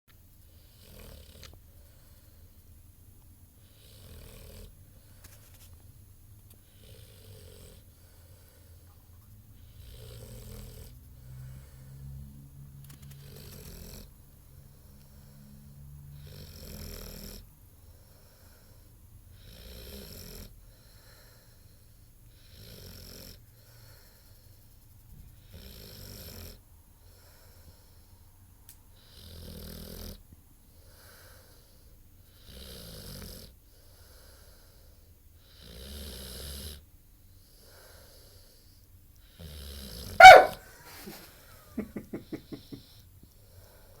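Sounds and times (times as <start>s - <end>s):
dog snoring: 0.4s - 2.1s, 3.6s - 5.1s, 6.6s - 8.8s, 9.6s - 12.3s, 13.0s - 24.5s, 25.4s - 28.0s, 29.0s - 36.9s, 39.2s - 40.6s
short pulses: 40.2s - 40.6s.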